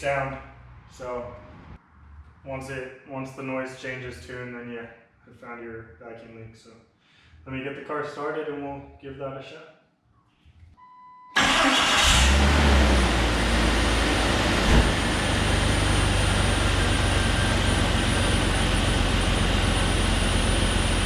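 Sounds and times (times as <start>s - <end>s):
car engine idling: 11.4s - 21.0s.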